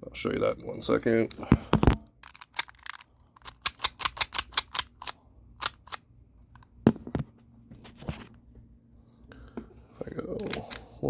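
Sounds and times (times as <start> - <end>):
mechanical calculator clicking: 2.2 - 6.0.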